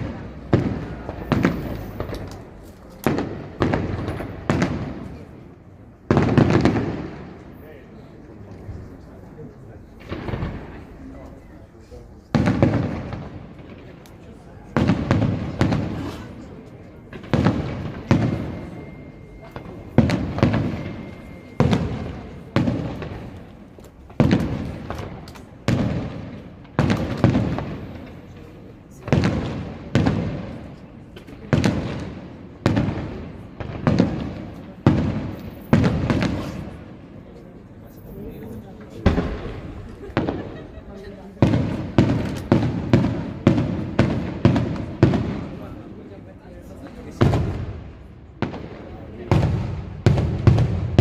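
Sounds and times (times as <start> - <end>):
firework bursts with rumbling echo: 3.0 - 5.3, 6.0 - 7.4, 10.0 - 11.0, 12.3 - 14.0, 14.6 - 16.4, 17.1 - 19.0, 24.1 - 28.4, 29.0 - 30.8, 31.4 - 37.1, 41.4 - 45.9, 47.1 - 51.0.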